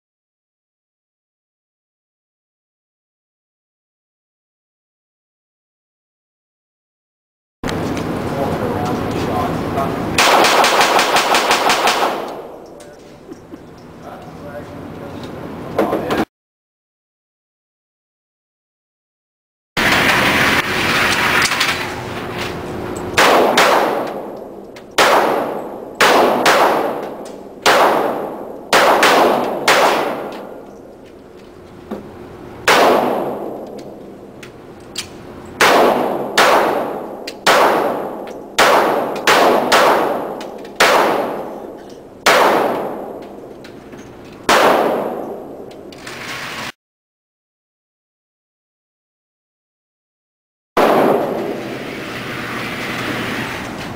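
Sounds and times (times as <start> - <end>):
gunshots with ringing tail: 10.2 - 12.8, 23.2 - 30.7, 32.6 - 34.0, 35.6 - 43.4, 44.5 - 45.7, 50.8 - 51.8.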